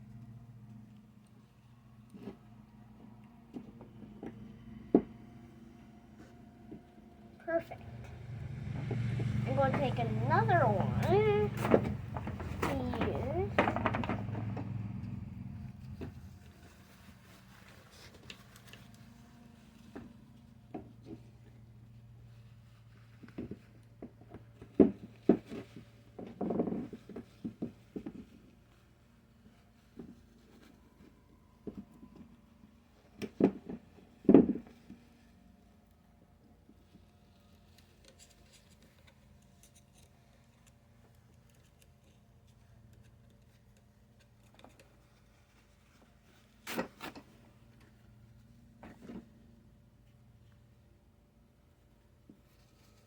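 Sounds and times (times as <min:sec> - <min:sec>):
steady low hum: 0:07.6 - 0:16.4
paper towel scraping on metal parts: 0:07.8 - 0:14.6.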